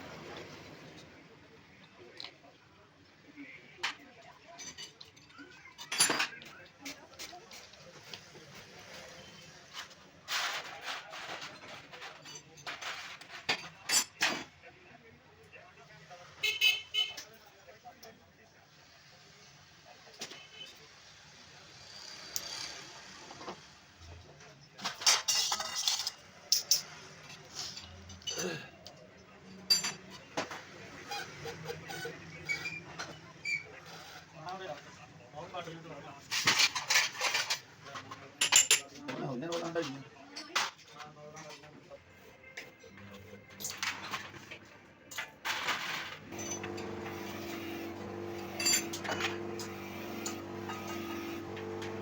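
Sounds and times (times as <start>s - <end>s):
small metal parts clinking: 24.8s - 28.4s, 38.4s - 38.9s, 48.4s - 51.1s.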